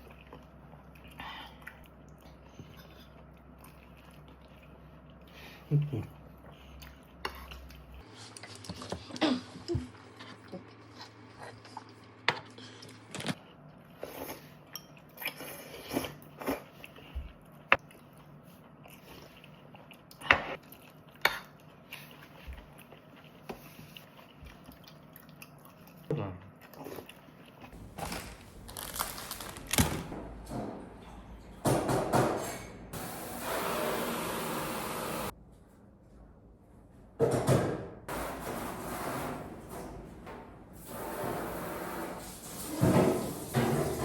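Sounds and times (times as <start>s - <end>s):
chewing and crunching: 0.0s - 9.2s, 9.9s - 29.7s.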